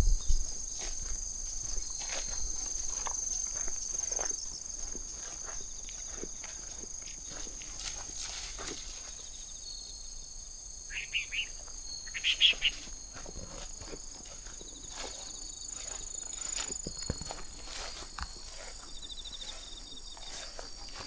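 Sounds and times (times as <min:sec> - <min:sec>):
faint footsteps: 0:00.0 - 0:09.3, 0:12.5 - 0:21.0
high-pitched insect chorus: 0:00.0 - 0:21.0
bird chirps: 0:10.9 - 0:12.8.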